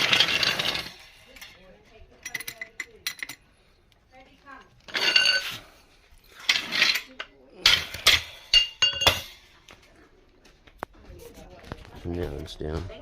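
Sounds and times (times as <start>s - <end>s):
metal tools clanking: 0.0s - 3.7s, 4.8s - 9.6s.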